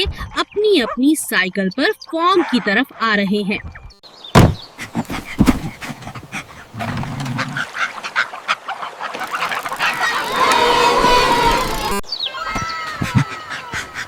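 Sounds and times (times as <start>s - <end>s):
loud knocks: 4.4s - 6.2s.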